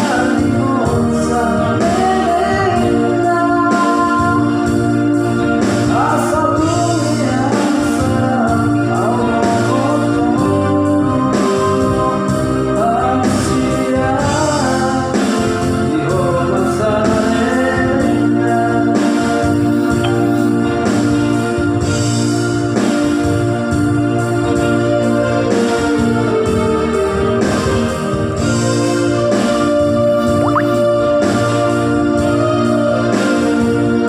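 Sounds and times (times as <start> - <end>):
electronic keyboard organ chords: 14.2 - 32.8
person singing: 19.6 - 20.8, 29.7 - 31.6
steady beat: 19.6 - 20.9.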